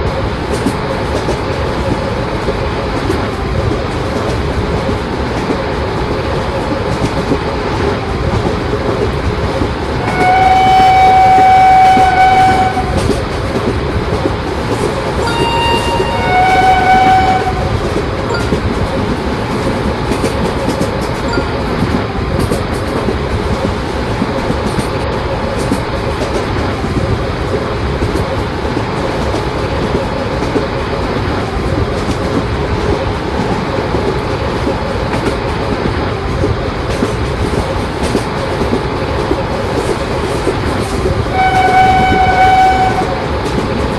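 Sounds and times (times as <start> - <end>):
train rumble and wheel clatter: 0.0 - 43.9
train horn: 10.0 - 13.2, 15.2 - 17.8, 41.3 - 43.3.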